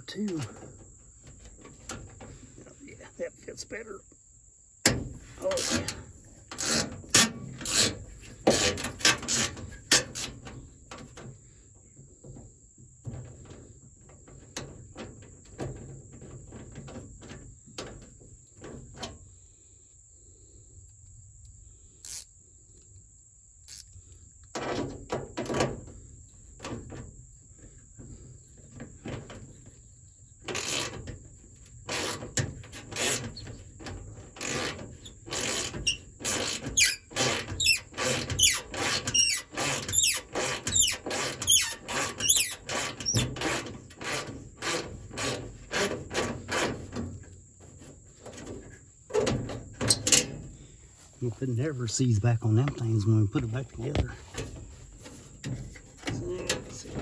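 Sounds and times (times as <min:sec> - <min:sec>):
hand tools clicking and scraping: 0:04.9 - 0:10.4, 0:30.5 - 0:31.0, 0:31.9 - 0:33.5, 0:34.3 - 0:47.1.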